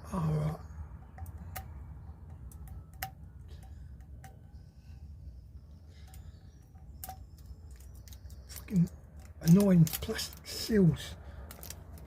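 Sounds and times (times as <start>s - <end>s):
low steady hum: 0.0s - 12.0s
jar seal clicks and taps: 1.0s - 4.4s.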